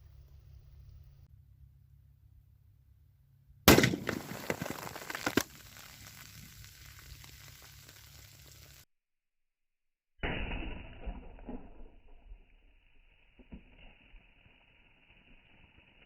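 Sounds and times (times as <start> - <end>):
rifle shot: 3.7 - 4.8
sharp pops: 3.7 - 8.1
cans bursting and fizzing: 3.7 - 8.8.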